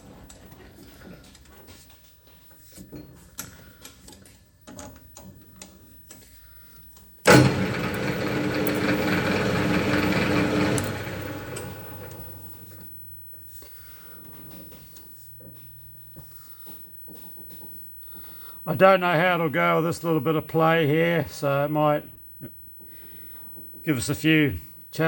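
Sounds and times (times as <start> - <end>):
metal lathe running: 7.3 - 12.8.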